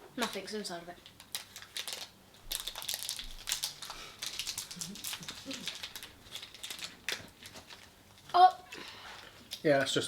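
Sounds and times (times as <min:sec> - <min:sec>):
wrapper crinkling: 0:01.0 - 0:08.4.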